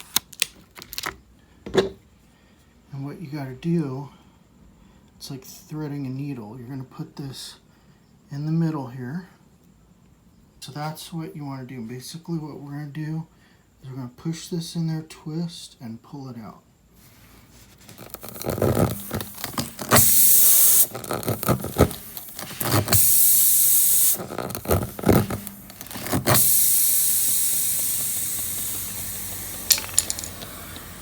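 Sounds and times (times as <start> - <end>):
air hissing from tire: 17.0 - 31.0
tool knocking and rubbing: 17.8 - 23.1, 24.2 - 26.6.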